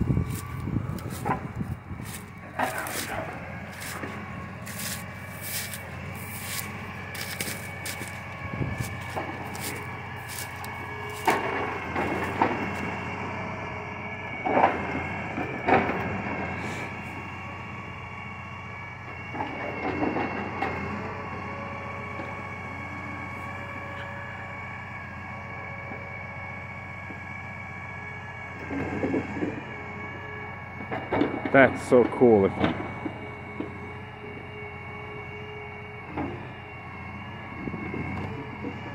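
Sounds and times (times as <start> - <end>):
hydraulic loader humming: 0.0 - 38.9
logs knocking and clunking: 0.2 - 12.9.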